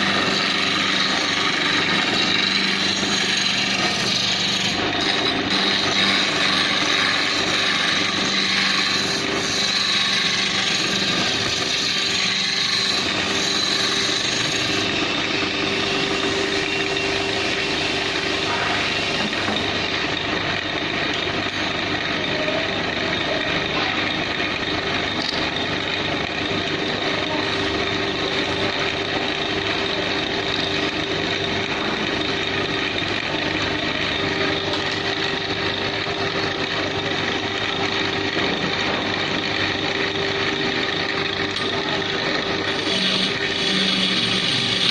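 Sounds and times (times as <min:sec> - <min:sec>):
turning tool scraping wood: 0:00.0 - 0:20.2, 0:42.4 - 0:44.9
wood lathe humming: 0:00.0 - 0:44.9.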